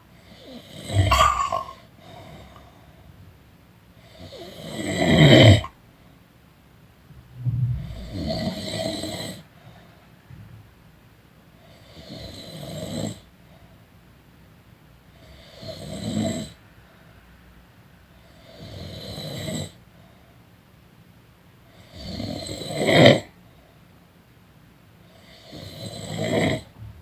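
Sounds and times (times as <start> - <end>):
person snoring: 0.8 - 2.7, 4.9 - 5.7.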